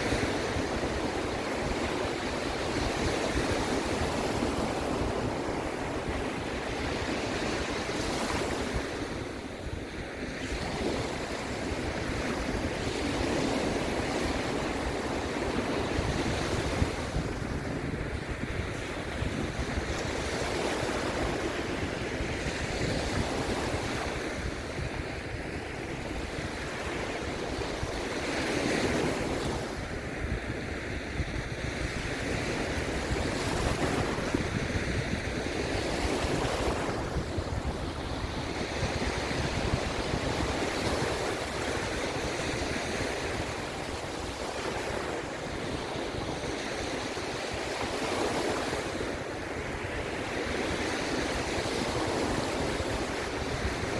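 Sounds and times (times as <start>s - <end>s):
wind on microphone: 0.0s - 53.9s
sea waves breaking: 31.4s - 53.9s.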